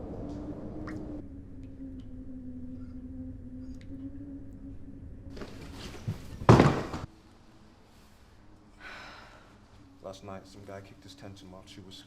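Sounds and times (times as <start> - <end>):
steady low hum: 0.0 - 11.9.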